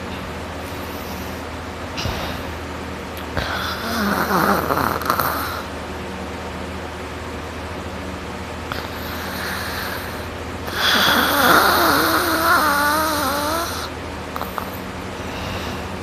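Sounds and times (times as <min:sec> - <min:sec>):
person snoring loudly: 0:03.4 - 0:05.7, 0:08.7 - 0:15.7
soft in-breath: 0:15.2 - 0:16.0.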